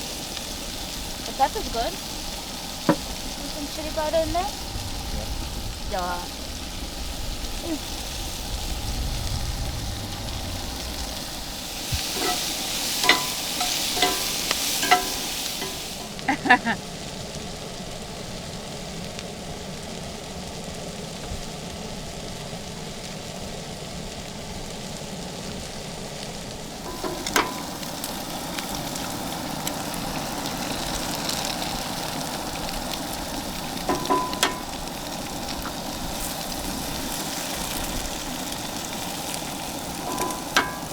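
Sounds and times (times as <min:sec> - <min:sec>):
eggs sizzling in a frying pan: 0:00.0 - 0:40.9
utensil clinking against pan: 0:12.0 - 0:16.2, 0:26.8 - 0:29.3, 0:33.8 - 0:35.0, 0:39.9 - 0:40.9.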